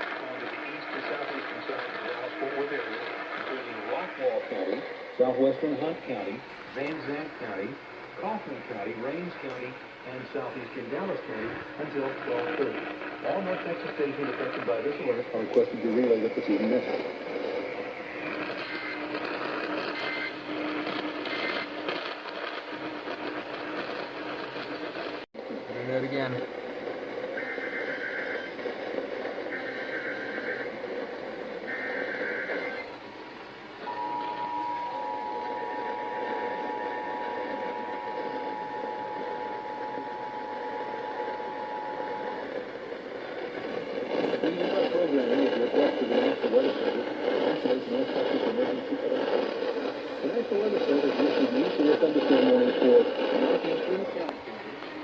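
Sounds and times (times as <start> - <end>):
radio hiss and static: 0.0 - 55.0
faint short data bursts: 18.1 - 21.9.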